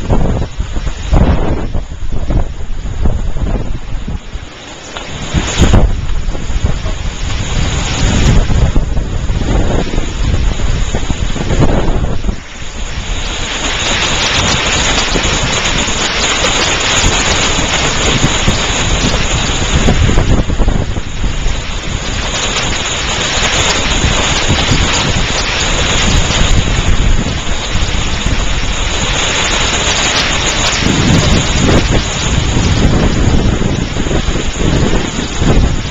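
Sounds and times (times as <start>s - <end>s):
hail and heavy rain pelting: 0.0s - 35.9s.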